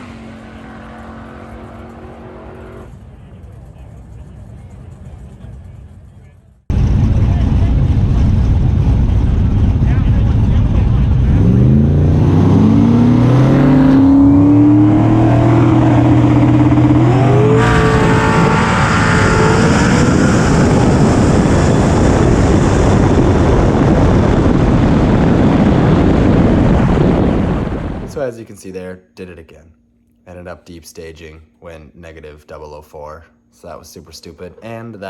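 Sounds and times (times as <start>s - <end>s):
drag car engine revving: 0.0s - 5.6s, 6.8s - 28.1s
engine and exhaust rush: 0.0s - 28.2s.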